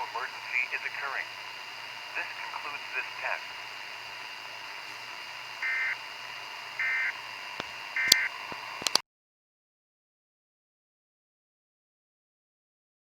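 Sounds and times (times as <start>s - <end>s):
radio hiss: 0.0s - 9.0s
sharp clicks: 6.8s - 9.0s.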